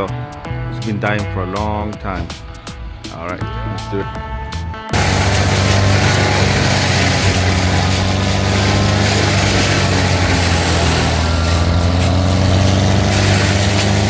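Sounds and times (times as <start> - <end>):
large engine running steadily: 5.0 - 14.0.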